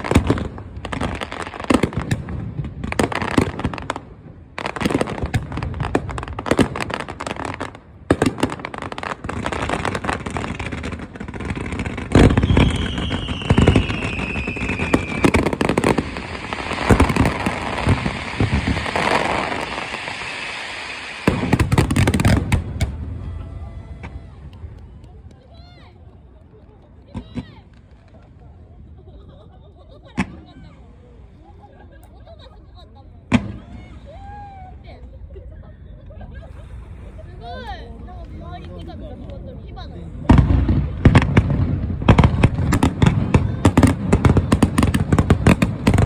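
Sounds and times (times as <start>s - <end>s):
fireworks booming and crackling: 0.0s - 31.7s, 33.2s - 34.4s, 40.2s - 46.0s
firework whistle falling in pitch: 12.4s - 15.4s.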